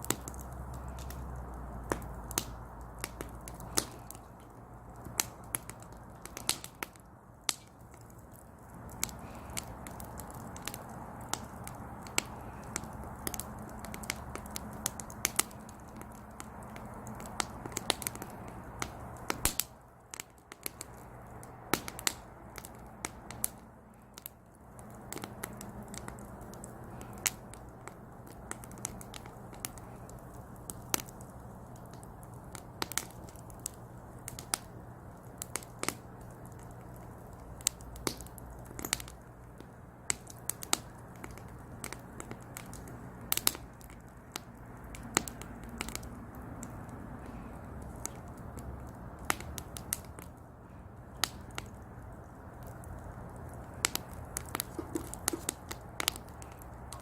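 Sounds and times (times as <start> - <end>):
fire hissing: 0.0 - 57.0
wood fire crackling and popping: 0.0 - 57.0.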